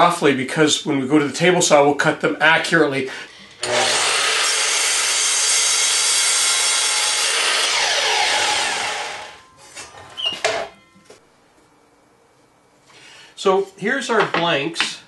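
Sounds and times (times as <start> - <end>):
power saw cutting wood: 3.5 - 9.4.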